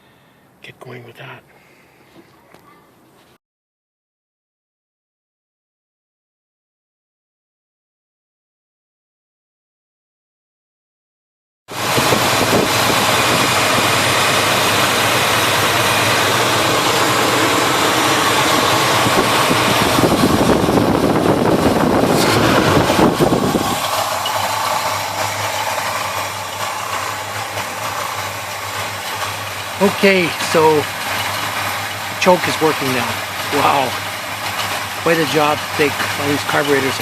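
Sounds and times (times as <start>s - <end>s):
car engine idling: 11.7s - 37.0s.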